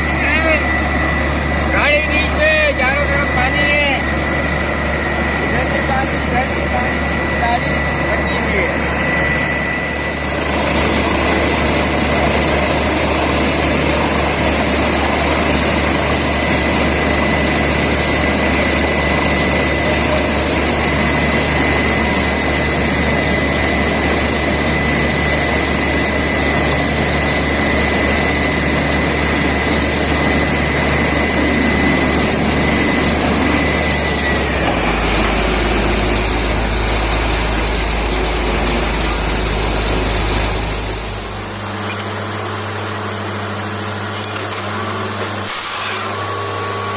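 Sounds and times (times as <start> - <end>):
drilling rig engine hum: 0.0 - 46.9
high whistle: 45.4 - 46.9.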